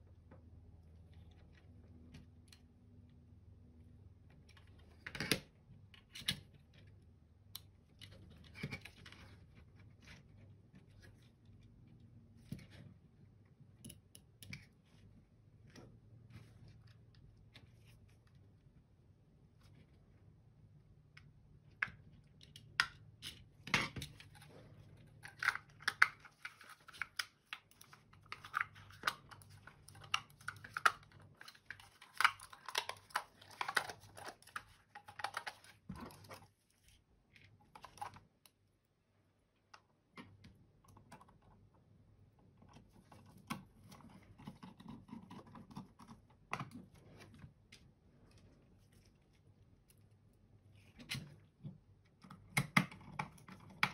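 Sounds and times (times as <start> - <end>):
plastic mouse parts clicking: 25.2 - 36.4.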